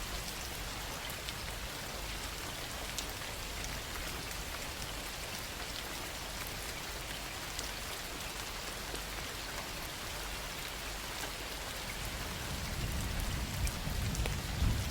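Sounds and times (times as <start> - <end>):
heavy rain pouring: 11.4 - 14.9
low rumble of thunder: 12.0 - 14.9.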